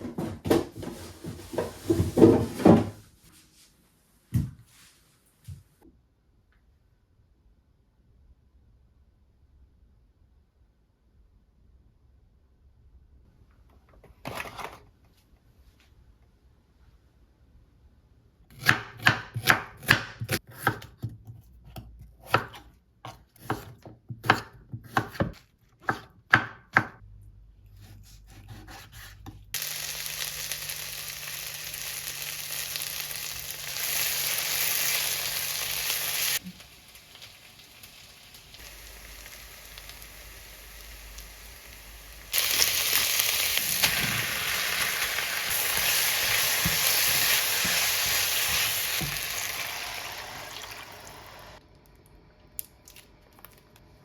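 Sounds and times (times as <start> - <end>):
knife chopping on cutting board: 18.5 - 27.0, 27.8 - 29.4
food sizzling in a pan: 29.6 - 51.6.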